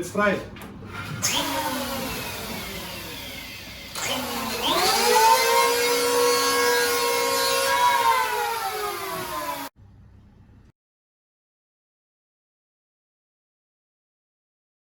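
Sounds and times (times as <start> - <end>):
electric planer motor whine: 1.3 - 9.7.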